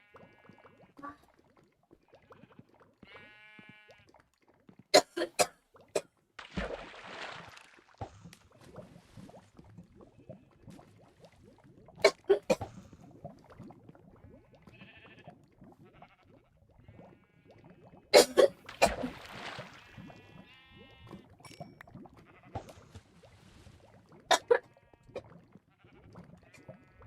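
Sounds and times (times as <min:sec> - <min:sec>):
woman coughing: 0:05.0 - 0:05.5, 0:12.1 - 0:12.6, 0:18.2 - 0:19.1.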